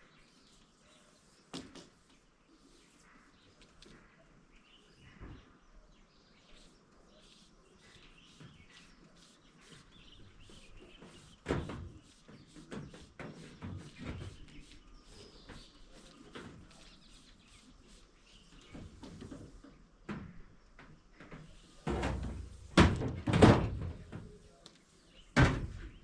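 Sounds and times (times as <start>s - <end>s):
faint birdsong: 0.0s - 26.0s
knocks and clatter from handling: 21.2s - 24.3s.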